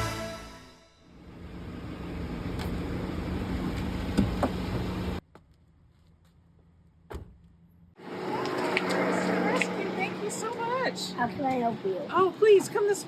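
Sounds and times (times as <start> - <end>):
vehicle running: 7.7 - 13.0.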